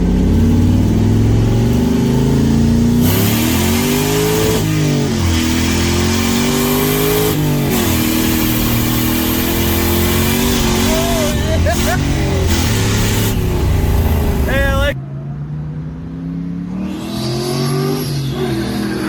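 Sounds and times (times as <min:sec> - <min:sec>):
rushing noise: 0:00.0 - 0:15.0
car engine accelerating hard: 0:00.0 - 0:19.0.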